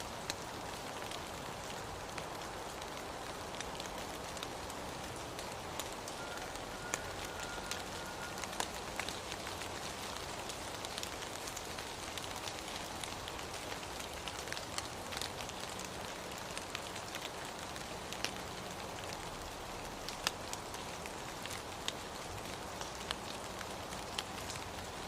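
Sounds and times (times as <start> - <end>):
raindrops ticking on surface: 0.0 - 25.0
steady rain hiss: 0.0 - 25.0.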